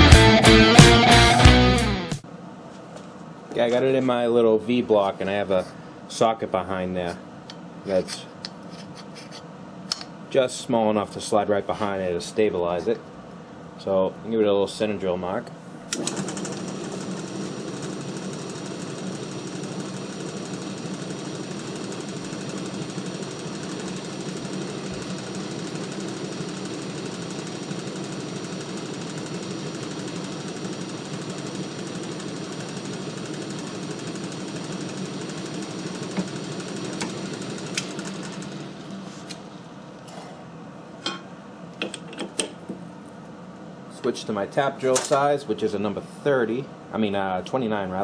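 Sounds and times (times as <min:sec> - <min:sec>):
machine tool motor running: 0:15.9 - 0:39.4
drill drilling steel: 0:16.0 - 0:38.5.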